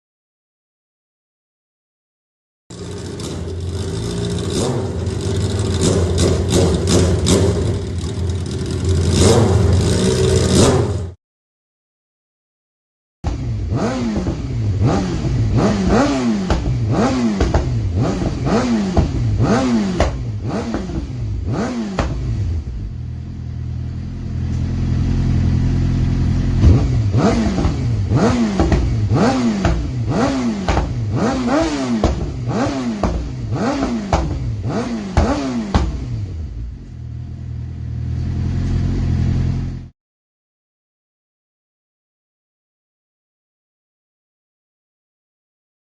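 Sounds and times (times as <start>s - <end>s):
motorcycle engine revving: 2.7s - 11.2s, 13.3s - 39.9s.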